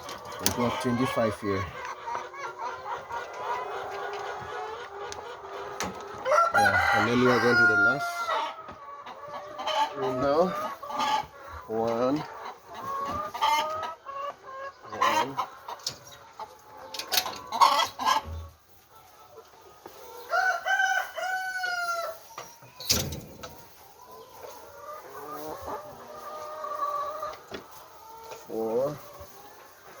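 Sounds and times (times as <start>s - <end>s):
chickens clucking: 0.0s - 30.0s
rooster crowing: 6.2s - 8.4s, 20.3s - 22.1s.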